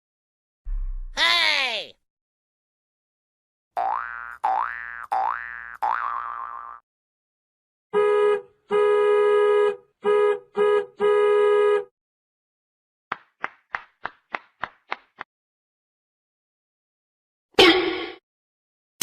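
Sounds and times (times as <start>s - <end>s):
horn-like tone blasts: 7.9s - 11.9s.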